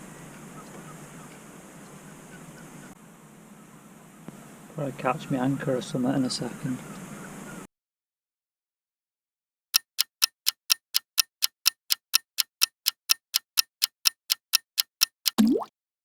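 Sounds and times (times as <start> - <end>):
clock ticking: 9.8 - 15.6.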